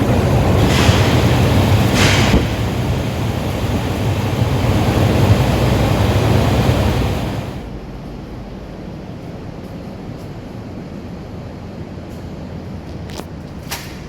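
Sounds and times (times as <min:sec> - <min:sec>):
large fan rushing air: 0:00.0 - 0:14.0.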